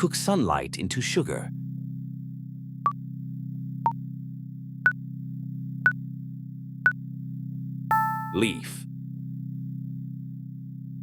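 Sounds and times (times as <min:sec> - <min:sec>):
countdown timer beeping: 0:07.9 - 0:08.7.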